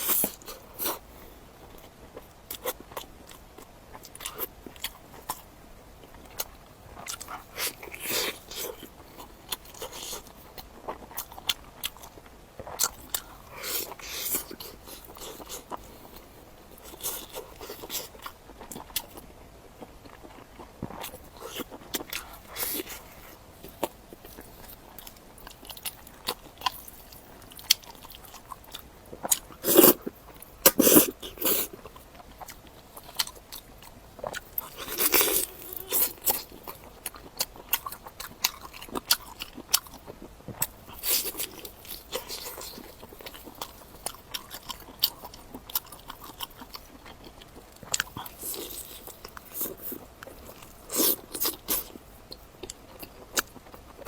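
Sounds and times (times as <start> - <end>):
mouth clicks and chewing: 1.7 - 54.0
crunchy bites: 20.0 - 52.0.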